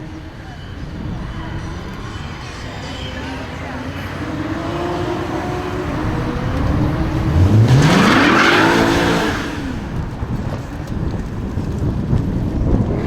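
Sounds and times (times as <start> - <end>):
car engine revving hard: 0.0 - 10.9.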